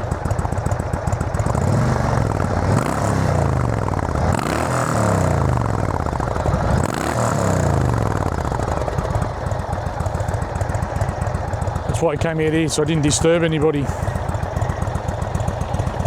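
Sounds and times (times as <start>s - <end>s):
motorcycle engine idling and revving: 0.0s - 16.0s.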